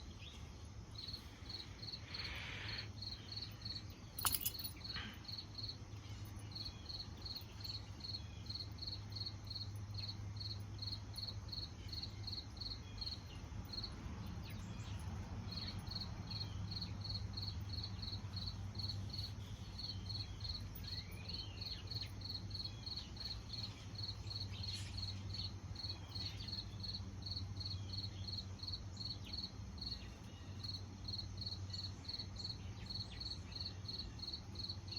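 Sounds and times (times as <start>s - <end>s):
crickets chirping: 0.0s - 34.9s
low steady hum: 0.0s - 34.9s.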